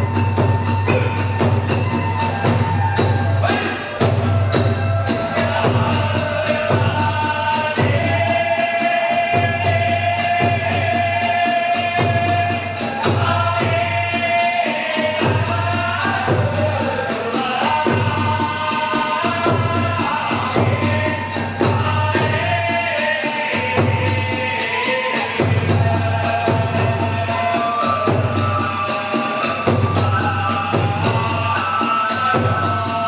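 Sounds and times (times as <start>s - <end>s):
large drum beating: 0.0s - 8.4s
sliding flute or vocal melody: 0.0s - 33.0s.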